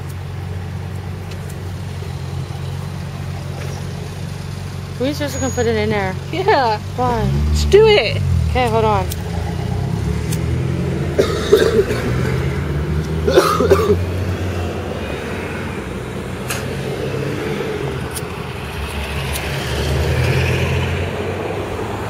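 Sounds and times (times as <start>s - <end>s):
car engine rumbling: 0.0s - 22.0s
throaty coughing sounds: 11.1s - 12.5s, 13.2s - 14.1s.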